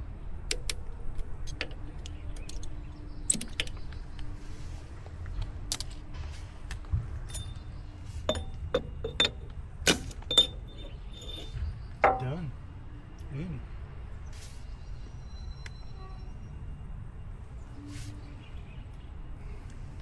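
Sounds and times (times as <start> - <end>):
light metal taps and clinks: 8.3 - 12.2.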